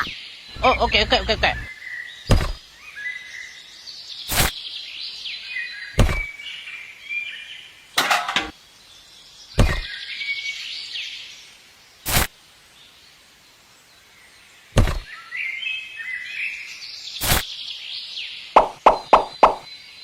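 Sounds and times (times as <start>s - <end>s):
small birds chirping: 0.0s - 20.0s
sharp knocks: 2.3s - 2.6s, 6.0s - 6.3s, 9.6s - 9.9s, 14.8s - 15.1s, 18.6s - 19.6s.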